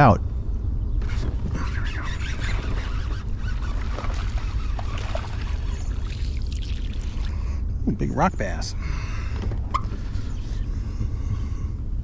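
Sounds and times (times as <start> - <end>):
wind rumble on microphone: 0.0 - 8.0, 9.2 - 12.0
water noise: 1.0 - 7.6.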